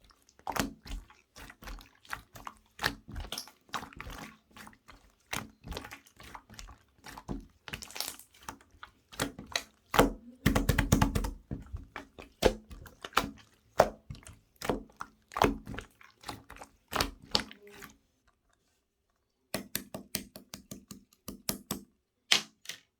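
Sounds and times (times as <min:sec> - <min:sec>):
slime squished by hand: 0:00.4 - 0:17.9.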